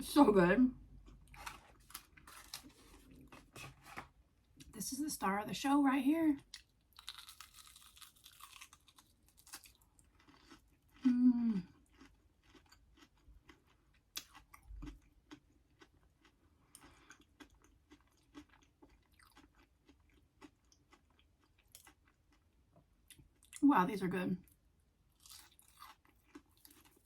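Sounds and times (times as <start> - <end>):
person chewing food: 1.0 - 4.7, 6.5 - 23.6, 24.4 - 27.0
person humming: 11.0 - 11.6.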